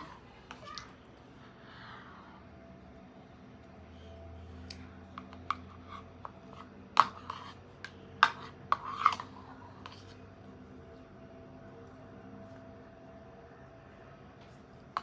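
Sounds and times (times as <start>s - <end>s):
spoon scraping in a bowl: 5.2s - 10.2s.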